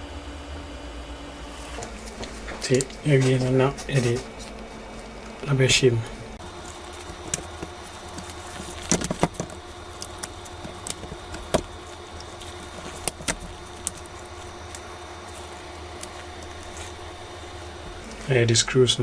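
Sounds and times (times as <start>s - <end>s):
faint steady hum: 0.0s - 18.2s
small tools clicking and tapping: 6.4s - 18.0s.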